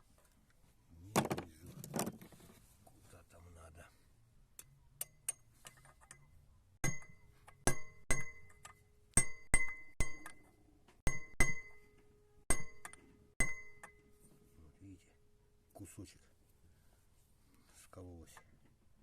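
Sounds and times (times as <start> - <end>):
hammer striking metal: 6.8 - 14.0.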